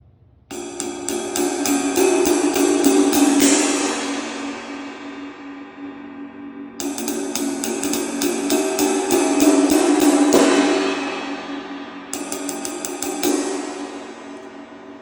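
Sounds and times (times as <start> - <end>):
ride cymbal struck with stick: 0.5 - 15.0.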